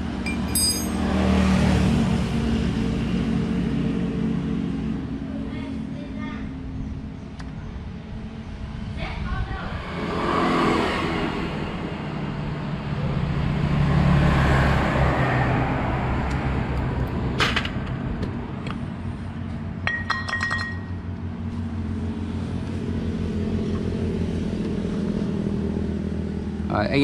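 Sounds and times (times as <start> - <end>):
metal tools clinking: 0.2 - 1.1, 19.9 - 21.0.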